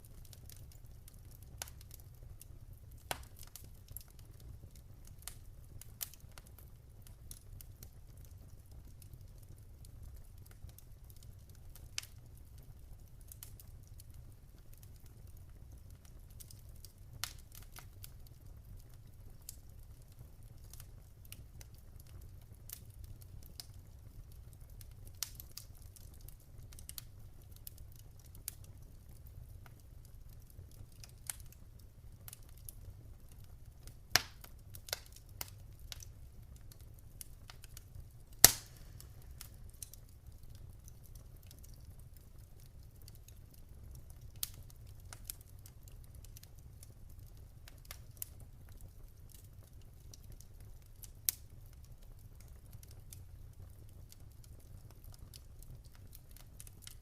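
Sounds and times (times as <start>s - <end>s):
low rumble of flames: 0.0s - 57.0s
wood fire crackling: 0.0s - 57.0s
sharp pops from logs: 38.4s - 39.1s.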